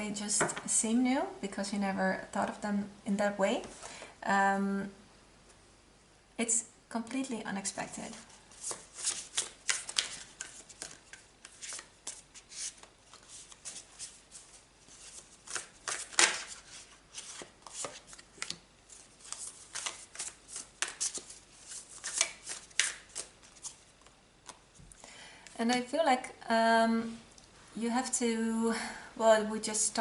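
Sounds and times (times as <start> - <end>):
cards being shuffled: 8.5 - 24.7.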